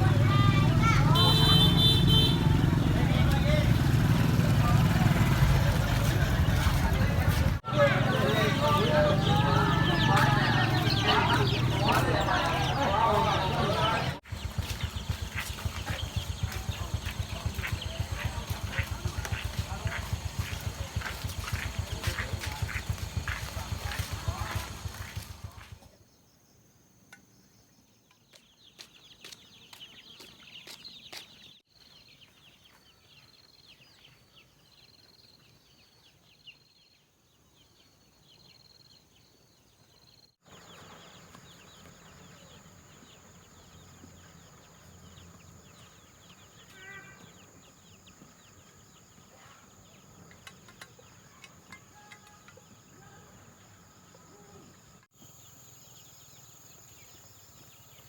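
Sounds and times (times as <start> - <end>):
chicken calling: 4.8 - 25.2
insects chirping and trilling: 37.6 - 58.0.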